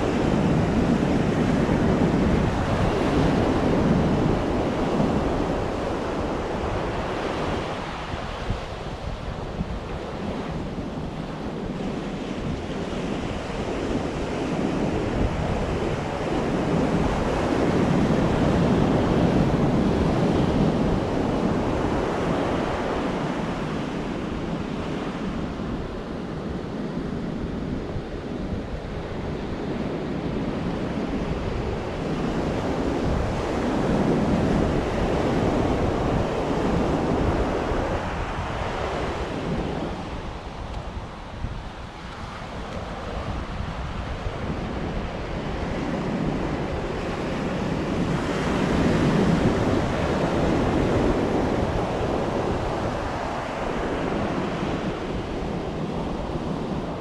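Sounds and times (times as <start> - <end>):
ocean surf washing onto shore: 0.0 - 57.0
wind buffeting microphone: 0.0 - 57.0.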